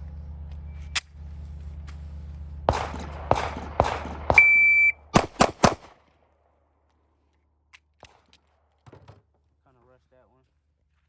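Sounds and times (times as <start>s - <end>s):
pistol shots: 2.7s - 6.0s
sharp bangs: 2.7s - 6.0s
shot timer beep: 4.4s - 5.1s.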